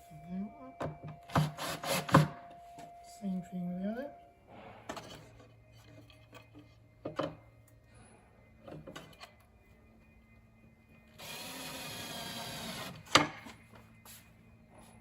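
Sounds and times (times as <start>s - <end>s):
power drill driving screw: 11.2s - 13.2s.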